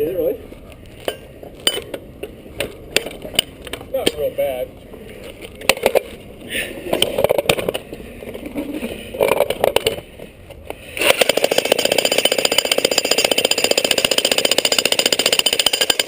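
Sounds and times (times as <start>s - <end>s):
jackhammer breaking rock: 11.0s - 16.0s.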